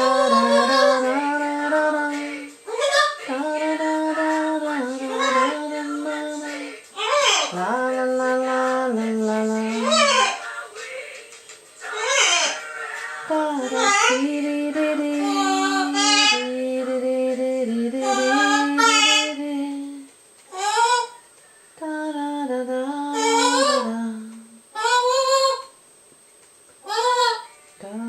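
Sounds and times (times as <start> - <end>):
parrot rising calls: 0.0 - 1.6, 2.7 - 3.3, 4.8 - 7.6, 9.7 - 10.6, 11.8 - 14.3, 15.2 - 16.5, 23.1 - 24.0
parrot singing: 0.0 - 21.8, 23.0 - 25.8, 26.8 - 27.6.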